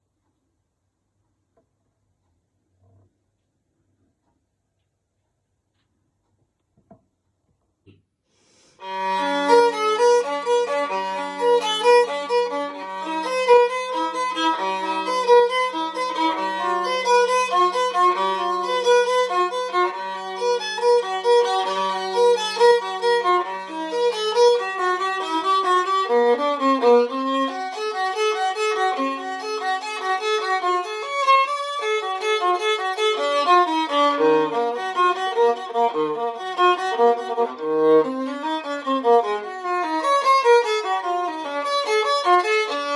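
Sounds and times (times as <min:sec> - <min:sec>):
solo viola bowed: 0:08.8 - 0:42.9.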